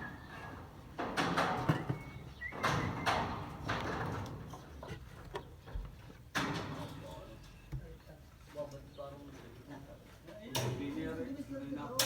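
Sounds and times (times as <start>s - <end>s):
construction knocks and bangs: 0.0s - 7.2s.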